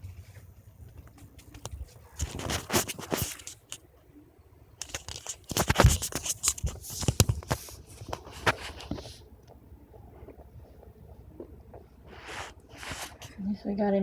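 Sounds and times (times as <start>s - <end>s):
rustling handling noises: 0.0s - 3.9s, 4.8s - 9.6s
sharp scrapes and crackles: 1.5s - 3.8s, 4.8s - 9.2s, 12.1s - 13.4s.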